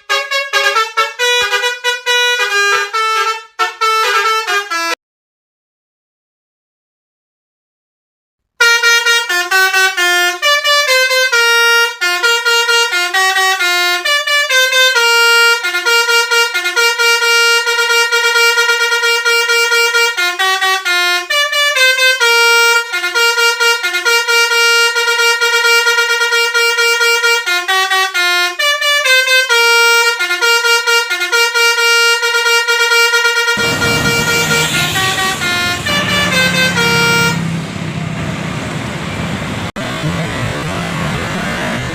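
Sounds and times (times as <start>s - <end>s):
musical bus horn melody: 0.0s - 5.0s, 8.6s - 37.9s
engine and road noise: 8.8s - 41.9s.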